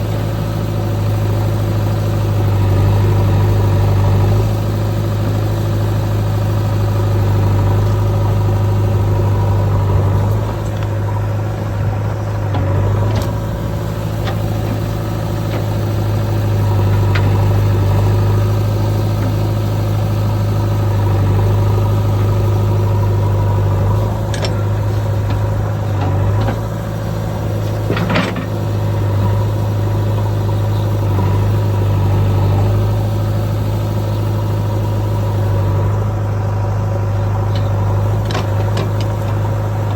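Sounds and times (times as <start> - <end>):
diesel engine idling: 0.0 - 39.9.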